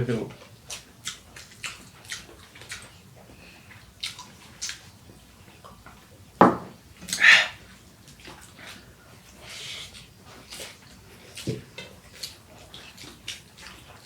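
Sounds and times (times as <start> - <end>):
lip smacks and chewing clicks: 0.4 - 4.9
sharp knock: 6.4 - 6.8.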